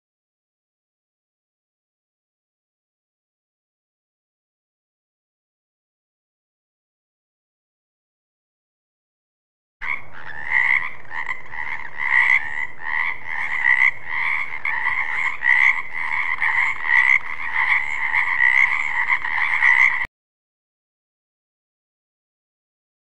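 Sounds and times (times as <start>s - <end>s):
frogs croaking: 9.8s - 20.1s.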